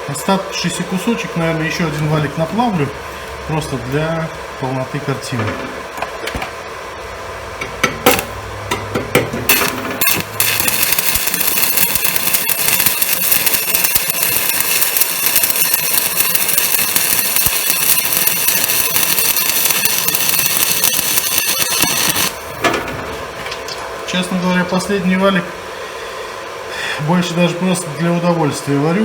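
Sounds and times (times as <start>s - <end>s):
welding arc crackling: 8.1s - 8.4s, 9.4s - 22.7s
electrode tapping and scratching: 9.5s - 22.6s.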